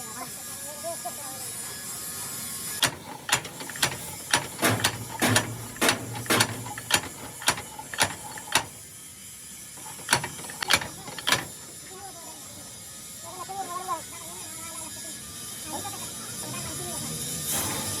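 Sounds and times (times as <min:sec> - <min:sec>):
sharp metallic clicks: 0:02.8 - 0:08.8, 0:09.8 - 0:11.7.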